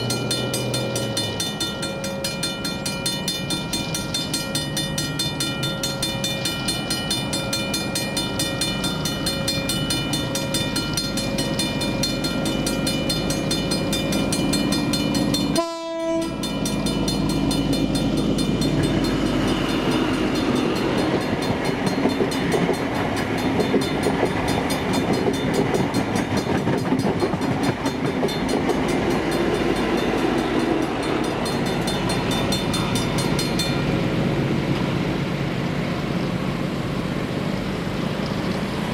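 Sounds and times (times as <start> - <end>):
level crossing bell ringing: 0.0 - 22.3
train passing with rumble: 0.0 - 38.9.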